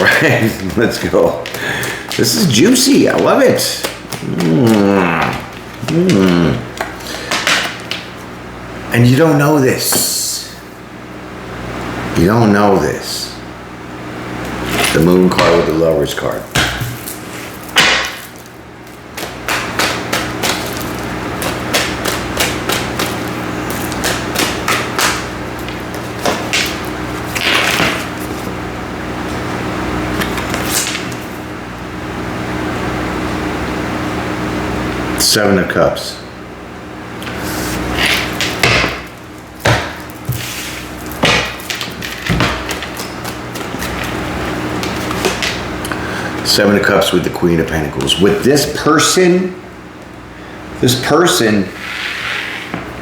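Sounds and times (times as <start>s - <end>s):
cards tapping on a table: 19.2s - 26.9s
sharp knocks: 38.4s - 40.4s.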